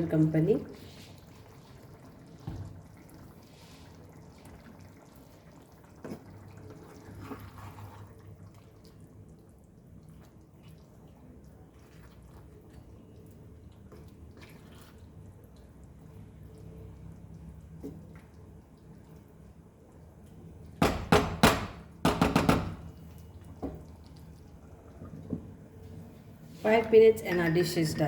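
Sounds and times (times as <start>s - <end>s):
curry bubbling in a pan: 0.7s - 20.8s, 22.9s - 26.1s
knock: 20.8s - 22.9s.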